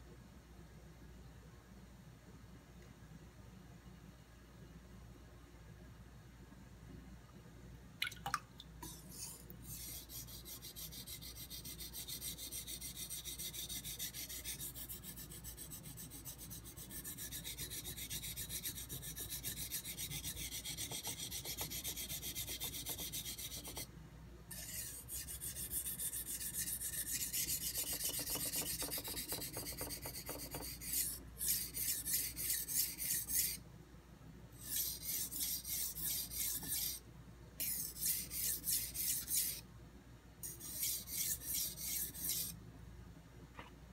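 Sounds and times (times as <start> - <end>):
knife scraping on whetstone: 8.8 - 23.9, 24.5 - 33.6, 34.6 - 37.0, 37.6 - 39.6, 40.4 - 42.6.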